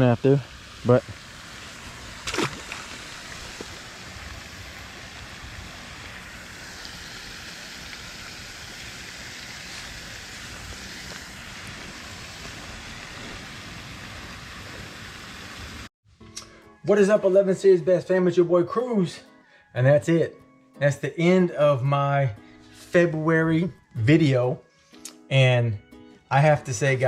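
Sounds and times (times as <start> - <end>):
water lapping at a bank: 0.7 - 15.8.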